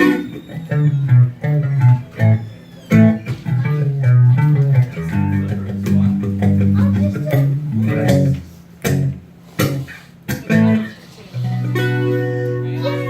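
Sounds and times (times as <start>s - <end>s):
bass guitar line: 0.0s - 13.0s
plucked guitar notes: 0.0s - 13.0s.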